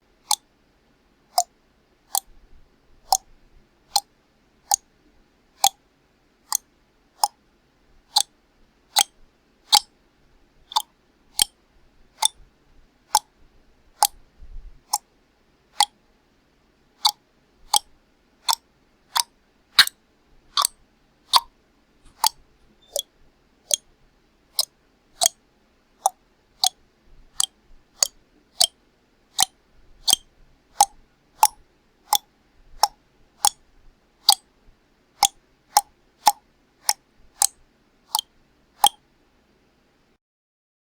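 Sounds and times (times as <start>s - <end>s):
tongue clicks: 10.7s - 11.5s, 14.0s - 14.2s, 17.0s - 17.9s, 19.2s - 20.0s, 20.6s - 21.5s, 30.1s - 33.6s, 35.2s - 39.0s.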